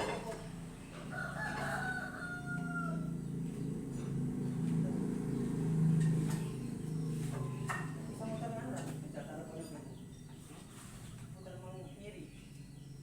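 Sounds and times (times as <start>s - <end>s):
rooster crowing: 0.9s - 3.4s.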